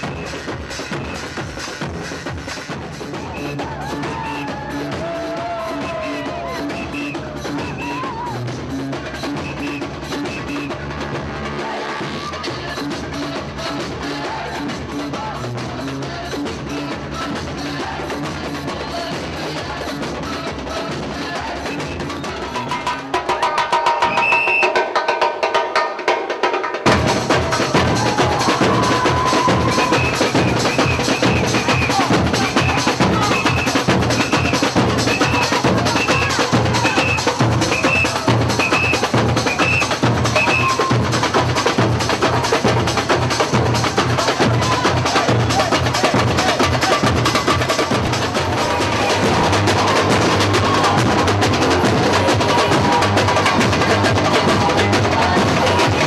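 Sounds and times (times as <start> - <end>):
samba percussion: 0.0 - 56.0
bass drum pulses: 26.9 - 56.0
electronic music: 26.9 - 56.0.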